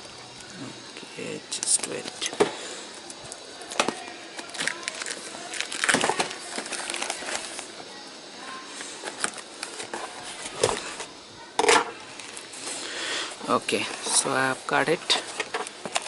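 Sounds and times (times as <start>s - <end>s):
sharp clicks and crackles: 0.4s - 7.7s
cardboard packaging rustling: 3.0s - 7.8s, 8.9s - 11.2s, 13.8s - 16.0s.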